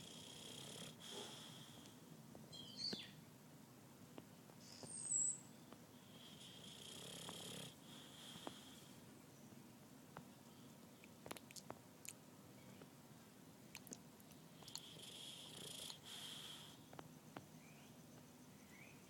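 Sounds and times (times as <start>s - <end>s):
dog snoring: 0.0s - 1.9s, 6.0s - 8.9s, 14.6s - 16.8s.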